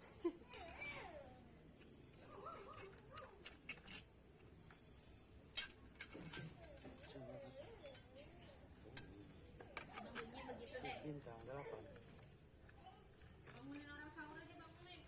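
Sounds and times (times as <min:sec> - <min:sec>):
child's faint voice: 0:00.4 - 0:01.5.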